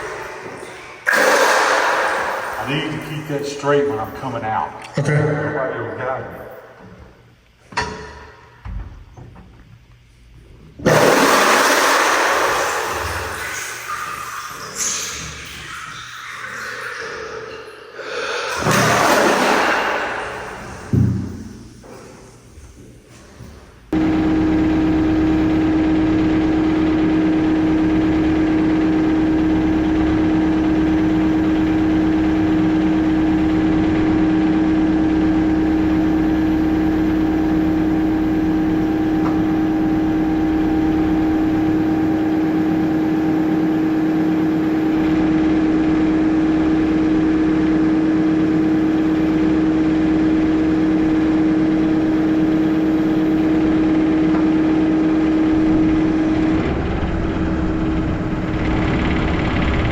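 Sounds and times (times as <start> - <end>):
motor humming steadily: 23.9 - 59.9.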